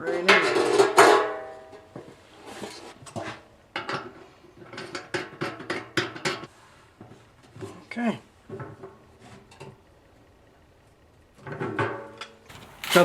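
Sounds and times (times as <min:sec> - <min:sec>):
metal drain parts clinking: 0:12.5 - 0:13.0.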